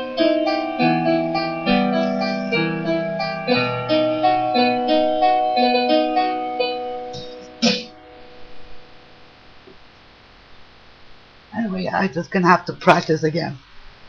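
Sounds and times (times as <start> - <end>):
electronic keyboard piano piece: 0.0 - 9.1
faint background hum: 0.0 - 14.0.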